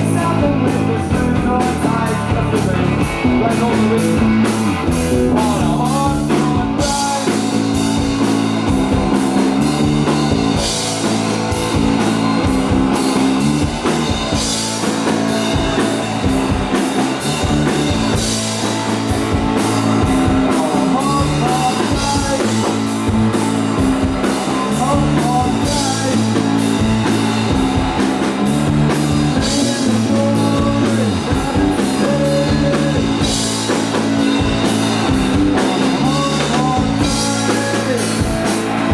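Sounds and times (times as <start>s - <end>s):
drum kit: 0.0s - 38.9s
electric guitar: 0.0s - 38.9s
live rock band playing: 0.0s - 38.9s.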